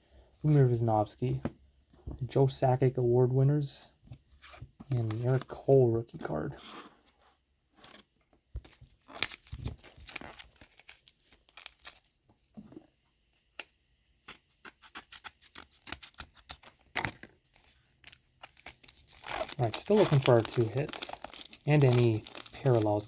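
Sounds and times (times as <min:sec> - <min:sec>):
wrapper tearing and crinkling: 0:09.0 - 0:12.2, 0:15.0 - 0:23.0
cards being handled: 0:14.6 - 0:23.0.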